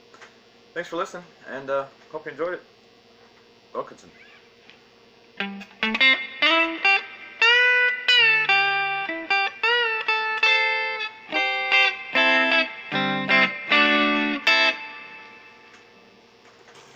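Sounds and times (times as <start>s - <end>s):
electric guitar lick: 5.4s - 16.0s.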